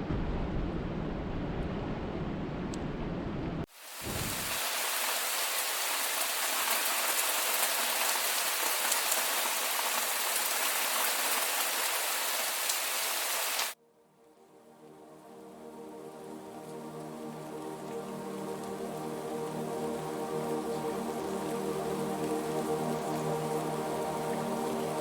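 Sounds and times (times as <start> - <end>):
steady rain falling: 3.7 - 13.8, 14.8 - 25.0
soft music: 13.8 - 25.0.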